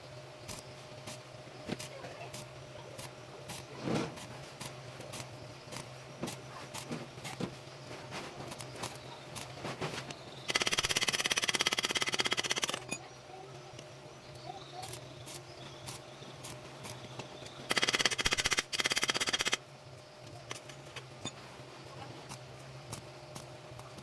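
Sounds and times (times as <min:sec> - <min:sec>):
welding arc buzzing crackle: 0:00.0 - 0:13.0, 0:13.8 - 0:24.0.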